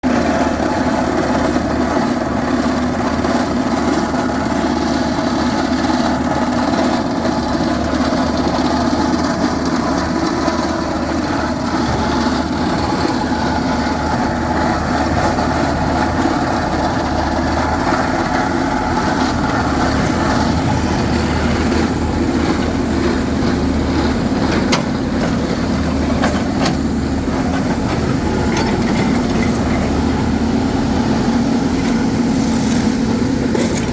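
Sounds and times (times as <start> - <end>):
construction machine engine running: 0.0 - 33.9.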